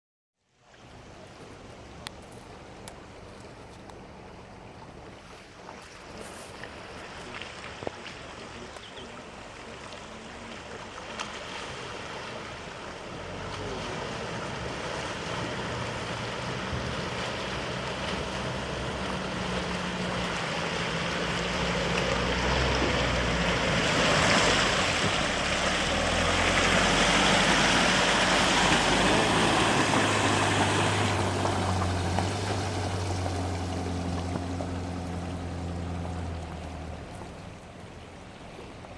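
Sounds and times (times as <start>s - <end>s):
water rushing and splashing: 0.5s - 38.9s
vehicle engine running: 12.0s - 38.9s.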